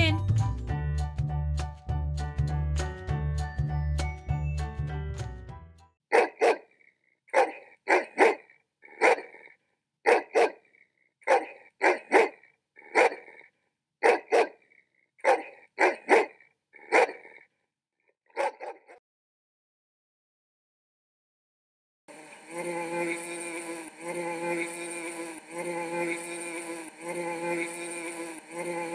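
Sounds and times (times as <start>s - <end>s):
music jingle: 0.0s - 0.8s, 2.4s - 5.9s
dog barking: 6.1s - 14.6s, 15.2s - 17.5s, 18.3s - 19.0s.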